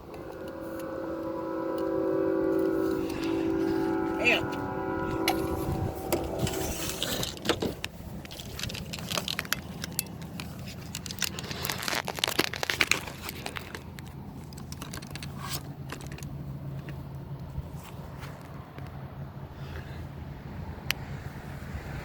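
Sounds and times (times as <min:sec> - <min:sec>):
low steady rumble: 0:00.0 - 0:22.0
crackling handling noise: 0:05.2 - 0:18.9.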